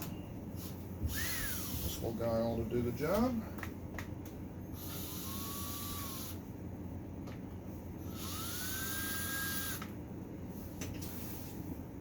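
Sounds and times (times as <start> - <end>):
power screwdriver motor whining: 1.1 - 2.0, 4.8 - 6.4, 8.1 - 9.9.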